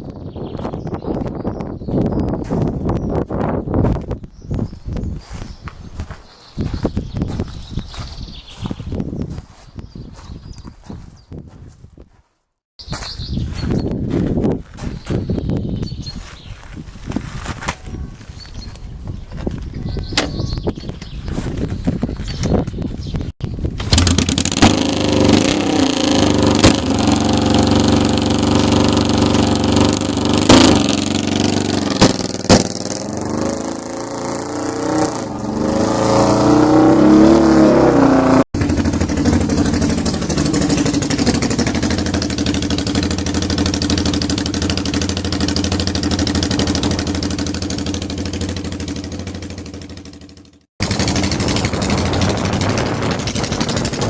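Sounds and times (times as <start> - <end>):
engine sharp cracks: 23.8 - 36.6, 38.6 - 54.0
motorcycle engine revving: 23.8 - 54.0.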